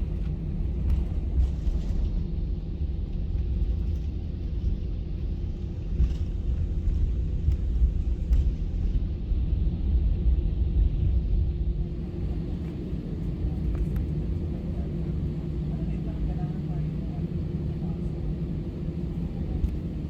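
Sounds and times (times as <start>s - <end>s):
airplane cabin rumble: 0.0s - 20.0s.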